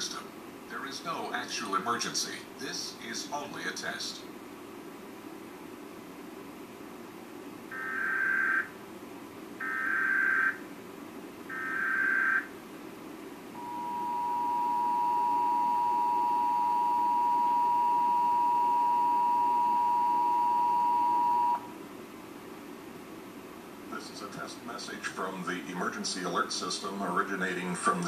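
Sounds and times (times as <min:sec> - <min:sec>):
two-tone alert signal: 0:13.6 - 0:21.6.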